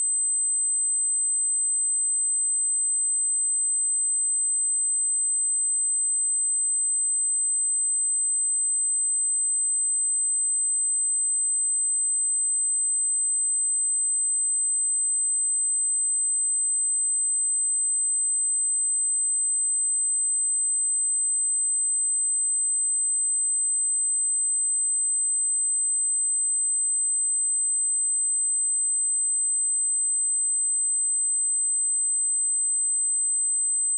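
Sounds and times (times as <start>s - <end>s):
high-pitched sine-wave test tone: 12.7s - 33.9s.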